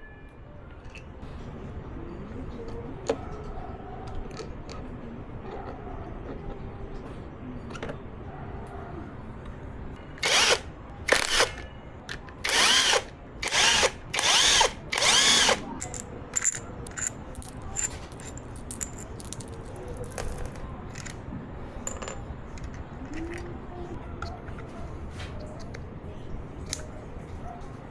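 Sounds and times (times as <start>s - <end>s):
power drill motor whine: 10.2s - 11.6s, 12.4s - 16.0s
light metallic clicks and tinkles: 15.8s - 21.2s.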